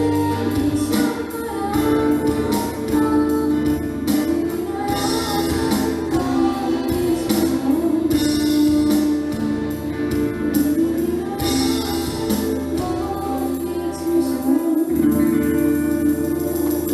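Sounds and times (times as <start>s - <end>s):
people singing: 0.0s - 8.7s.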